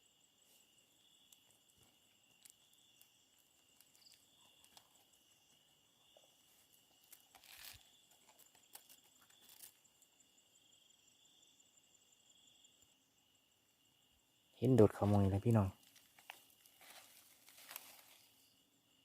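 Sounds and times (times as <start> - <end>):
insects chirring: 0.0 - 19.0
soft rustles: 6.1 - 9.8, 15.0 - 18.6.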